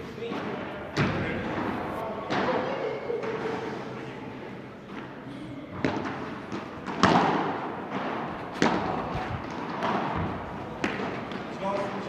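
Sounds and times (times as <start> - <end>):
ball struck by rackets: 5.8 - 11.9.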